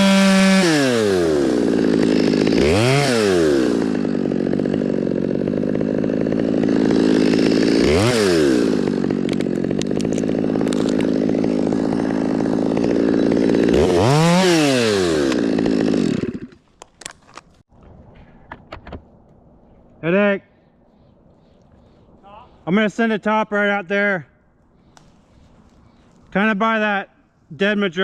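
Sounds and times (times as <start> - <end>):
chainsaw revving: 0.0 - 16.6.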